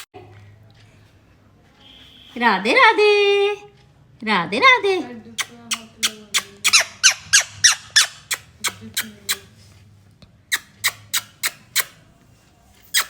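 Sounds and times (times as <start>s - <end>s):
parrot sharp calls: 5.4s - 9.4s.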